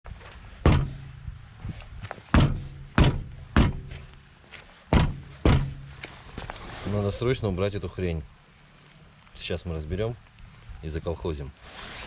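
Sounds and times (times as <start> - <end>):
car wheel being kicked: 0.6 - 1.1, 2.3 - 4.1, 4.9 - 6.1.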